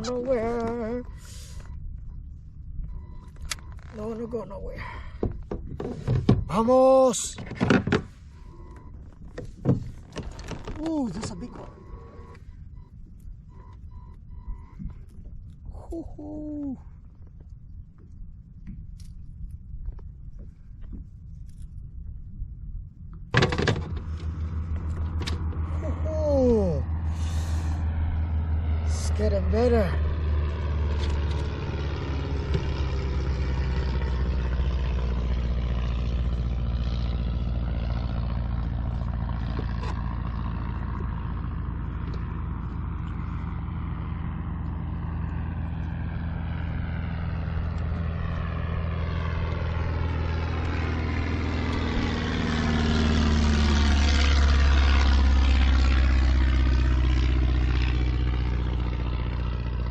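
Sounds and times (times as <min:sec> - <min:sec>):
motorboat engine: 0:00.0 - 0:02.2, 0:03.0 - 0:15.0, 0:23.3 - 0:59.9.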